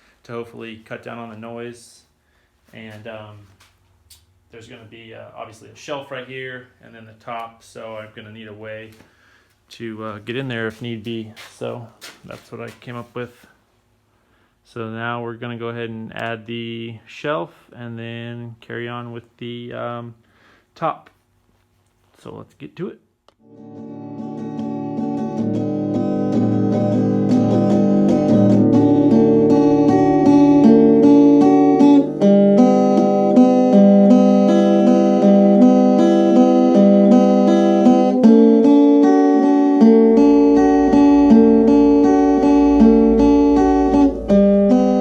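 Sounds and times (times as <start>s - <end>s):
acoustic guitar strumming chords: 23.4s - 45.0s.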